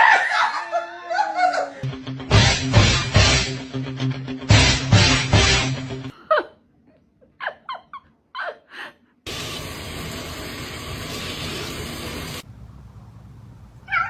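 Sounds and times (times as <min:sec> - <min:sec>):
music: 0:01.8 - 0:06.1
steady hiss: 0:09.3 - 0:12.6.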